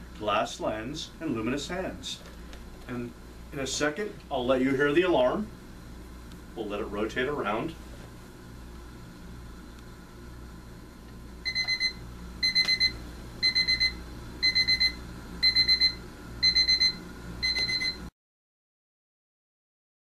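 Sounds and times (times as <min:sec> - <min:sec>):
alarm clock beeping: 0:11.4 - 0:18.0.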